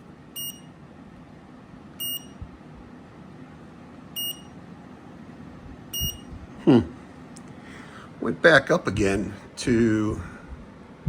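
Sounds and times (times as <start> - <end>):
low background hum: 0.0 - 11.0
short high electronic beeps: 0.4 - 0.7, 2.0 - 2.4, 4.2 - 4.5, 6.0 - 6.3.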